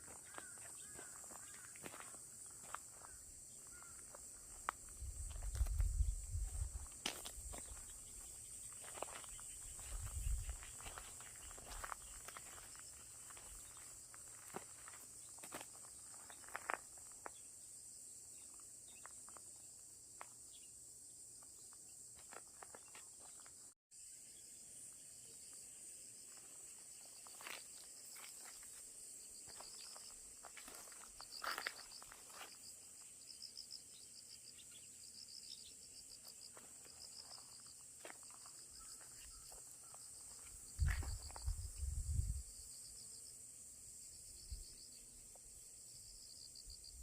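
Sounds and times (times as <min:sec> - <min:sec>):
insect chirring: 0:00.0 - 0:47.0.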